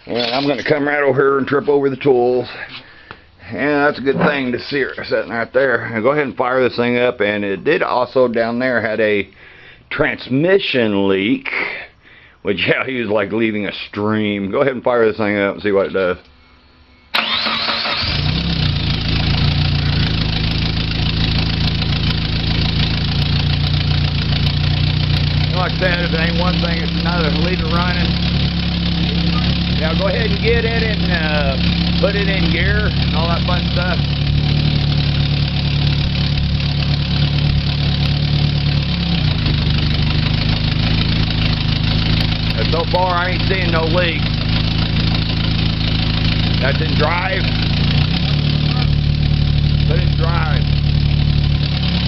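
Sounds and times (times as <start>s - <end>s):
car engine idling: 17.2s - 52.0s.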